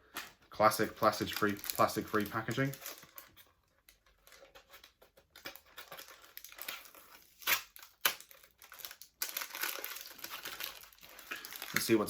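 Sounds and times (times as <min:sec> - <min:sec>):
cardboard and paper packaging rustling: 0:00.1 - 0:12.0
packaging tearing: 0:00.8 - 0:03.5, 0:04.1 - 0:12.0
sharp paper rips: 0:05.9 - 0:12.0.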